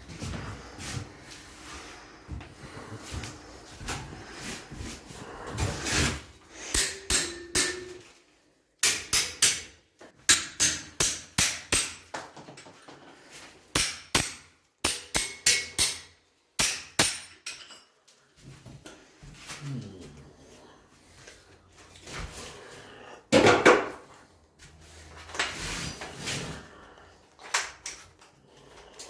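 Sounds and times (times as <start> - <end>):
hammer strikes: 6.7 - 8.1, 8.8 - 12.2, 13.7 - 17.5.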